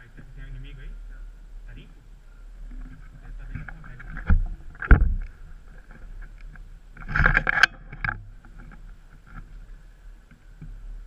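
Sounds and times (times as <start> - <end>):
knocks and rustling thumps: 2.7 - 9.6.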